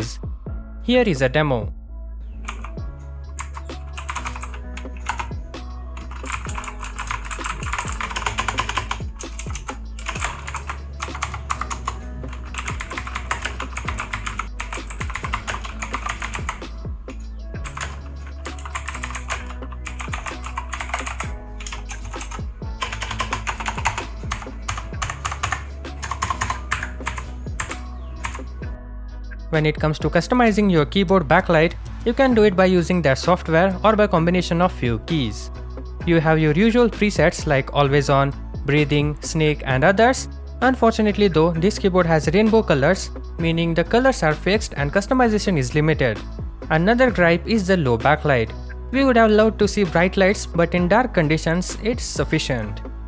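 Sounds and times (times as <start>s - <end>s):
background music with bass: 0.0s - 53.0s
clicky mechanical keyboard typing: 2.4s - 2.8s, 3.4s - 5.4s, 6.0s - 16.6s, 17.6s - 28.5s.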